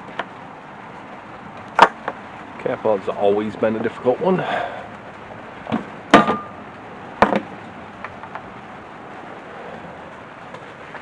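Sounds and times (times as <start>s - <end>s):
sharp knocks: 5.7s - 6.5s.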